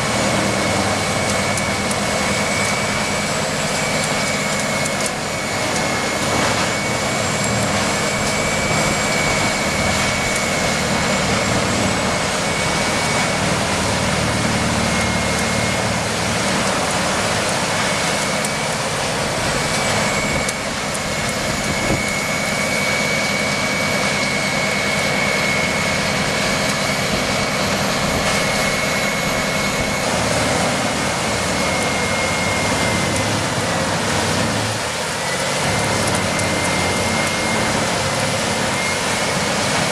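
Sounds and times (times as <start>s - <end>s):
wood-processing machine whining: 0.0s - 39.9s.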